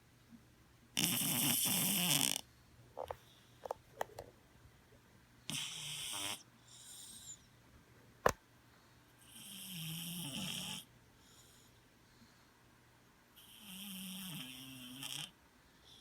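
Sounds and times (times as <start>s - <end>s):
cat snoring: 1.0s - 2.4s, 5.5s - 7.4s, 9.3s - 10.9s, 13.4s - 15.4s.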